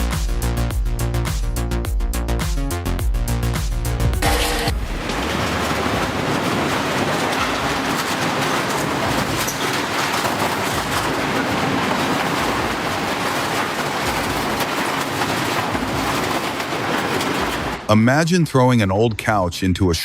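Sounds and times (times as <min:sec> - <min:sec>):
shredder grinding material: 0:04.2 - 0:17.8.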